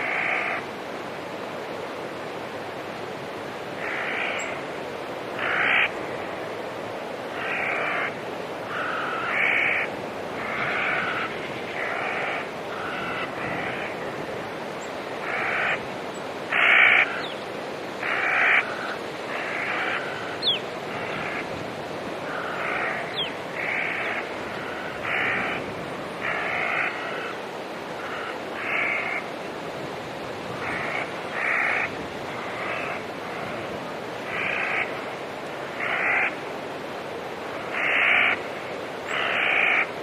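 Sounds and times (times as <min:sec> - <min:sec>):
crows cawing: 0:00.0 - 0:00.7, 0:03.8 - 0:04.6, 0:05.3 - 0:06.0, 0:07.3 - 0:14.2, 0:15.2 - 0:15.9, 0:16.5 - 0:17.4, 0:18.0 - 0:21.6, 0:22.2 - 0:29.3, 0:30.6 - 0:33.7, 0:34.3 - 0:35.0, 0:35.6 - 0:36.4, 0:37.6 - 0:39.9.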